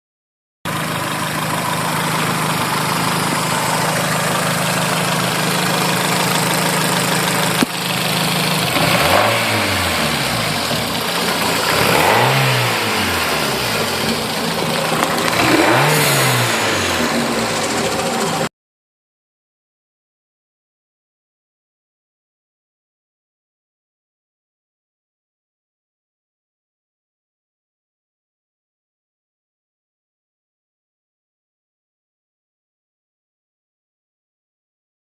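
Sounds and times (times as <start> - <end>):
car engine idling and revving: 0.7 - 18.5.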